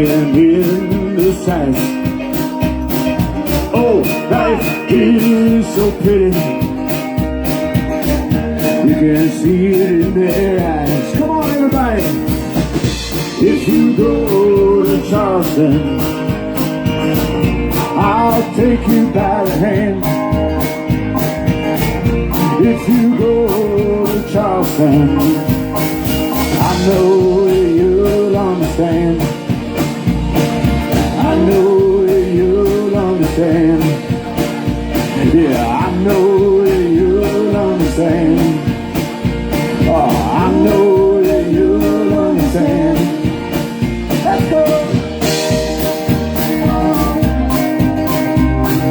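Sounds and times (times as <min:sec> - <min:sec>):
drum kit beat: 0:00.0 - 0:48.9
guitar: 0:00.0 - 0:48.9.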